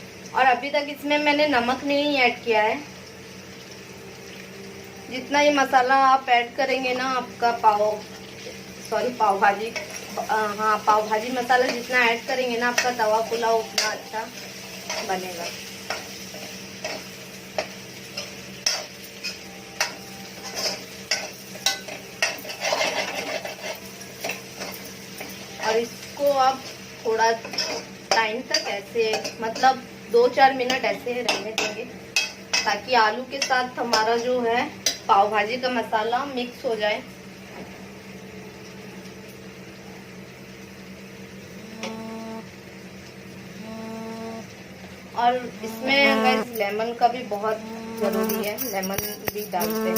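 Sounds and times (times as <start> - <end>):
mechanical hum with hiss: 0.0 - 49.9
spatula scraping a pan: 20.4 - 24.8
short pitched tone: 45.8 - 46.5, 47.6 - 48.6.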